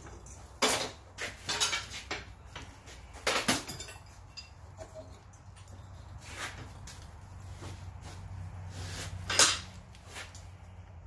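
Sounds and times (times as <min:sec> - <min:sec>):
metal-on-metal clanks: 0:00.0 - 0:02.4, 0:03.2 - 0:05.7, 0:09.2 - 0:09.8.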